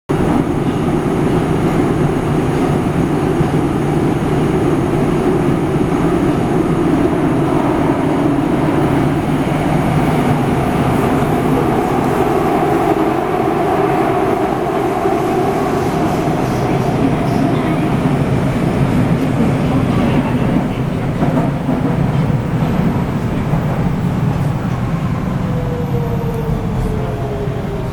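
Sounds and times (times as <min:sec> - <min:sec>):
subway train rumbling: 0:00.1 - 0:27.9.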